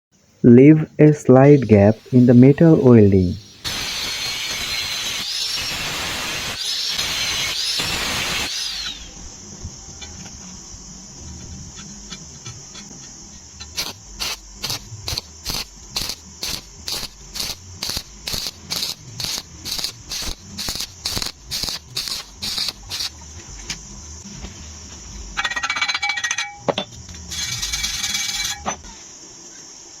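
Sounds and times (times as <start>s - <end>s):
welding arc crackling: 3.4s - 9.2s, 13.6s - 23.2s.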